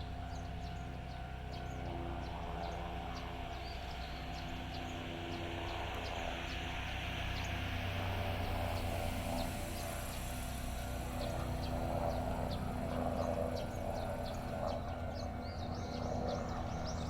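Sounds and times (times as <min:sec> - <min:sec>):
train running noise: 0:04.1 - 0:15.5.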